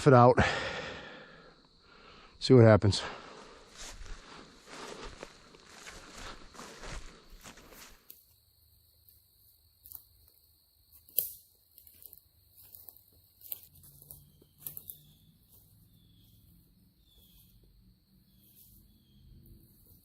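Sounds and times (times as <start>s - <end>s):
insects chirring: 0.0s - 20.0s
sharp ticks and snaps: 8.0s - 8.4s, 9.8s - 15.7s.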